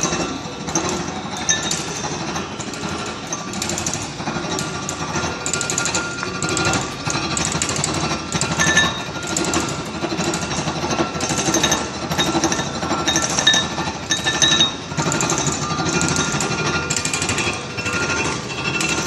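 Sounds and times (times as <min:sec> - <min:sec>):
milling cutter chattering on iron: 0:00.0 - 0:19.0
steady machine whine: 0:00.0 - 0:19.0.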